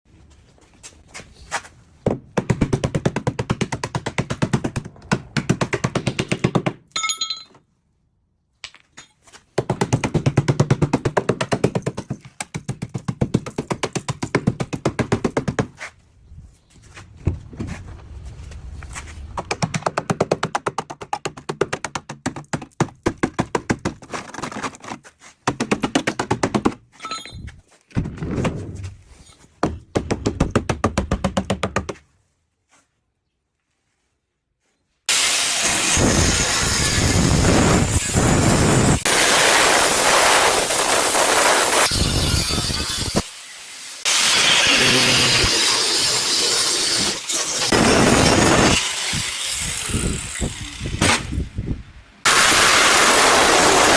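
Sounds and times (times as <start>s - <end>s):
rapid repeated knocking: 2.1s - 6.8s, 9.6s - 15.8s, 19.4s - 24.0s, 25.4s - 26.8s, 29.6s - 32.0s.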